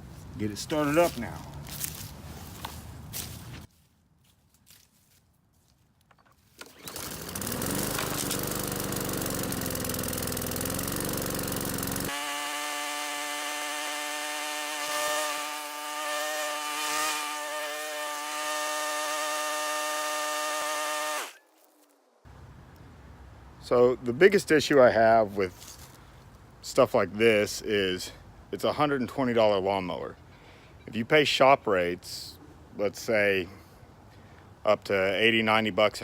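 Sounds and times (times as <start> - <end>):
push-mower engine starting and running: 6.6 - 21.4.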